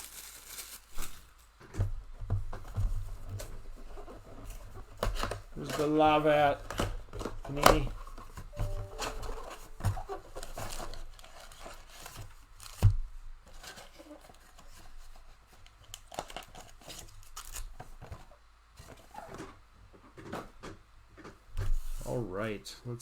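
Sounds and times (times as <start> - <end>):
plastic wrapping tearing and crinkling: 0.0 - 1.6, 15.8 - 17.8.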